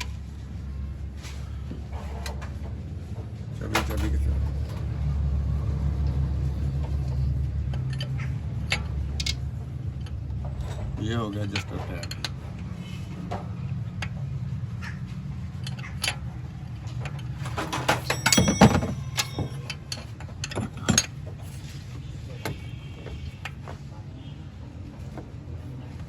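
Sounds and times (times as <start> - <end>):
metal tools clinking and knocking: 6.9 - 12.5, 15.5 - 23.6.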